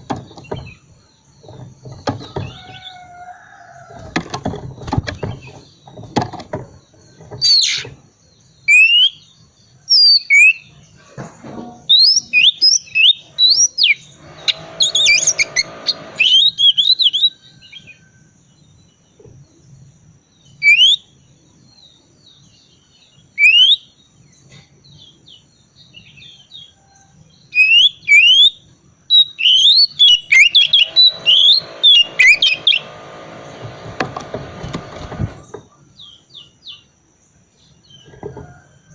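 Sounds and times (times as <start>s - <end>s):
songbird whistling and twittering: 7.2s - 8.0s, 8.6s - 10.7s, 11.9s - 18.1s, 20.5s - 21.2s, 23.3s - 24.0s, 27.4s - 33.0s
bird buzzy chatter: 29.7s - 35.6s.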